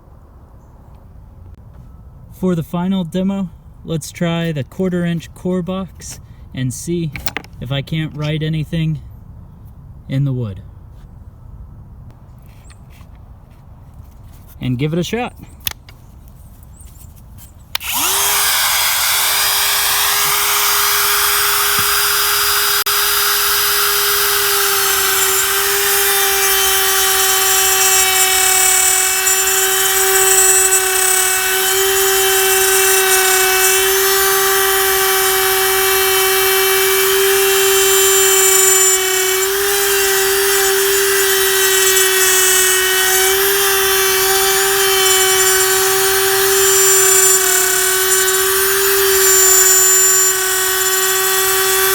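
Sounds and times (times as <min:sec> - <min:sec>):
router whining: 0:17.7 - 0:51.9.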